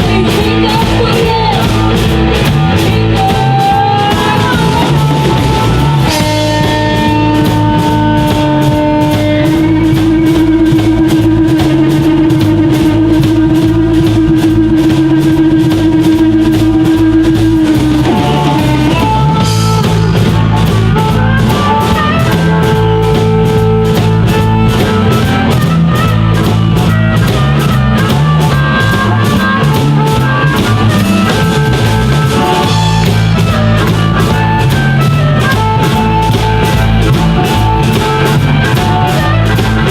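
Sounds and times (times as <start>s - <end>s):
bass guitar: 0.0s - 39.9s
drum kit cymbal beat: 0.0s - 39.9s
electric guitar lead: 0.0s - 39.9s.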